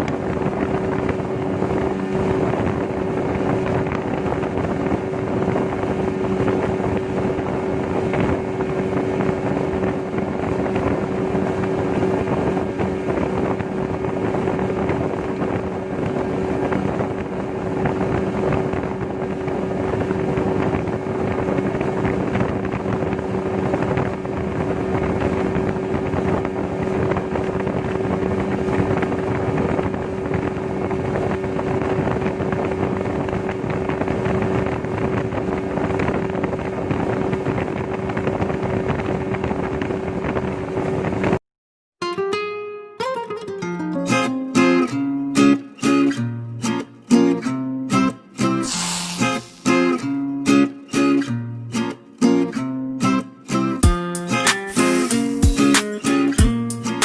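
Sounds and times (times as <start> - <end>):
outboard motor running: 0.0 - 41.4.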